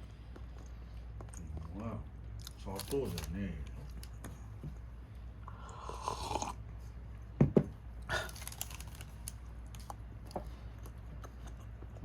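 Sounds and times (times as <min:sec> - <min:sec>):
plastic wrapper crinkling: 0:02.5 - 0:04.1, 0:08.2 - 0:09.9.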